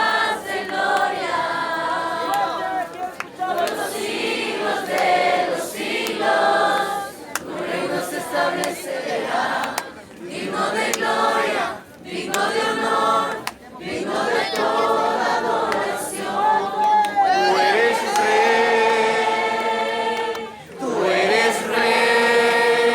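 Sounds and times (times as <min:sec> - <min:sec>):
young people singing together: 0:00.0 - 0:22.9.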